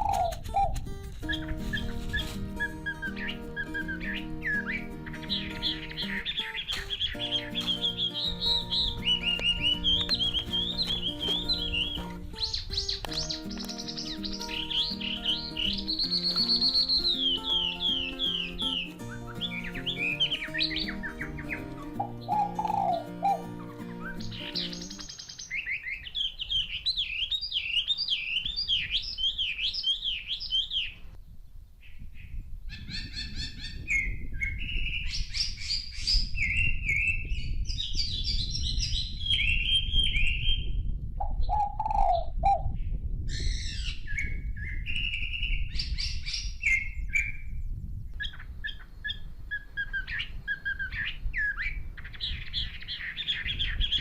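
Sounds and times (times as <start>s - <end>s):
lower bird call: 0.0s - 31.1s
birds chirping: 0.0s - 54.0s.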